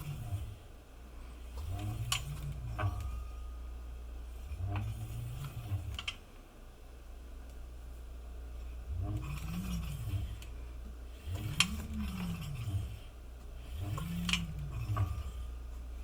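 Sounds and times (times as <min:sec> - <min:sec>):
brake rotor scraping: 0:00.0 - 0:06.2, 0:08.8 - 0:16.0
constant low hum: 0:00.0 - 0:16.0
electric motor buzzing: 0:08.8 - 0:16.0.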